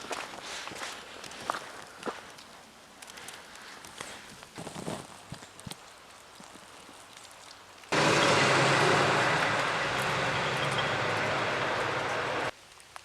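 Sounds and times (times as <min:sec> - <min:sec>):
loud steady rushing noise: 0:07.9 - 0:12.5.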